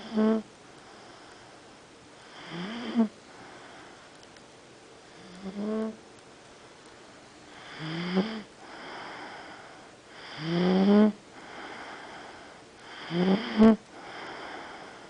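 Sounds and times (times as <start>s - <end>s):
animal snoring: 0.0s - 0.5s, 2.2s - 3.2s, 5.2s - 6.0s, 7.6s - 8.5s, 10.2s - 11.2s, 12.8s - 14.6s.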